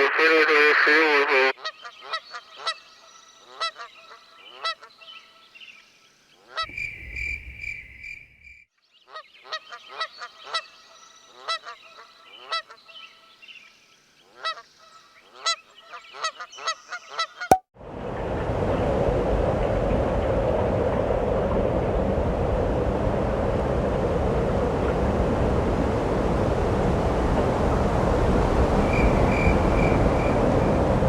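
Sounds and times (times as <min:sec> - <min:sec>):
steady rushing noise: 0:17.8 - 0:31.0.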